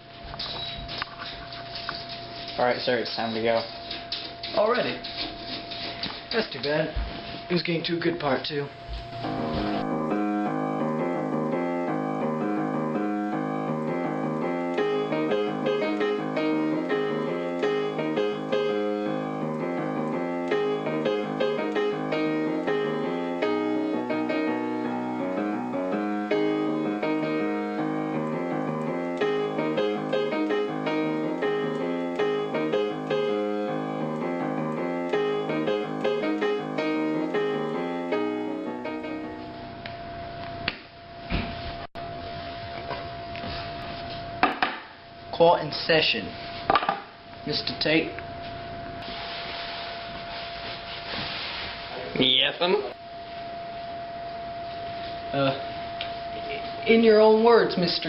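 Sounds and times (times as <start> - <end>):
solo piano music: 8.7 - 40.4.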